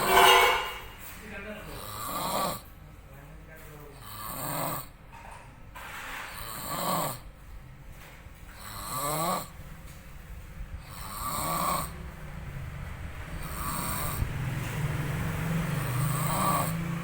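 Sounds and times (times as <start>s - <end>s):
person snoring loudly: 1.8s - 2.6s, 4.0s - 4.9s, 6.4s - 7.2s, 8.6s - 9.6s, 10.8s - 12.0s, 13.4s - 14.3s, 15.8s - 17.0s.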